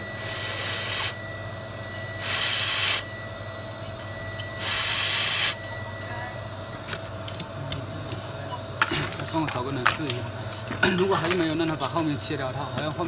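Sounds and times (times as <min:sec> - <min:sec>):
faint high whine: 0:00.0 - 0:08.8
low hum: 0:00.0 - 0:13.0
pressurised gas hissing blasts: 0:00.2 - 0:01.2, 0:02.2 - 0:03.0, 0:04.6 - 0:05.6.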